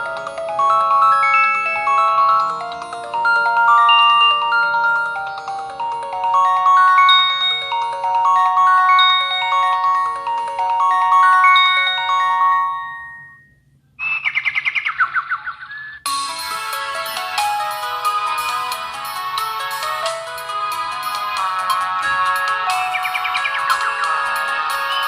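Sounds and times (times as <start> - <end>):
marimba-style ringtone melody: 0.0 - 13.6, 16.0 - 25.0
warbling chirp ringtone: 0.0 - 25.0.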